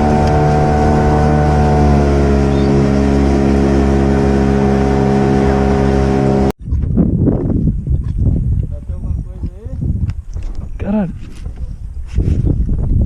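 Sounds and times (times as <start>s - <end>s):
outboard motor running: 0.0s - 6.6s.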